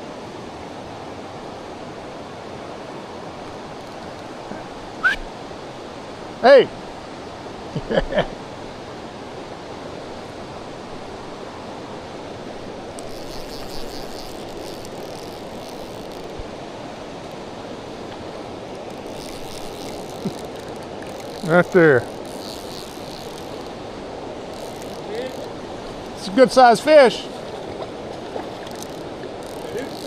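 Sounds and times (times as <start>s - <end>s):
river water flowing: 0.0s - 30.0s
person calling out: 21.4s - 22.1s, 29.7s - 30.0s.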